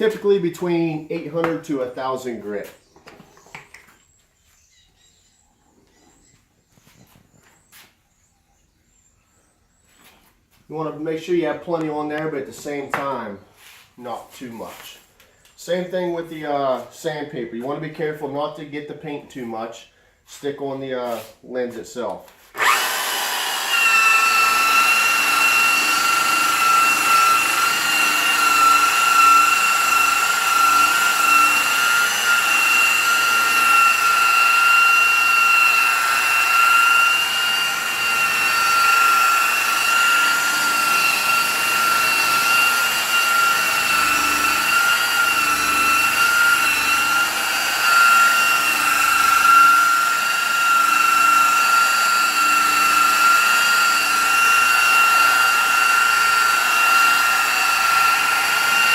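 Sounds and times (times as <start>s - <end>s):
electric buffer whining: 22.5s - 58.9s.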